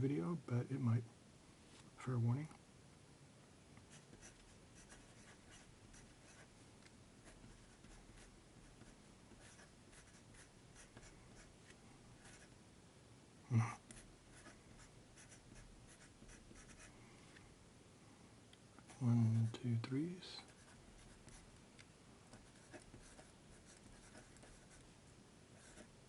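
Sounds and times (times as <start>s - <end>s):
pencil scratching on paper: 3.9s - 6.5s, 7.2s - 11.5s, 13.9s - 16.9s, 20.5s - 21.4s, 22.3s - 24.9s, 25.6s - 25.9s.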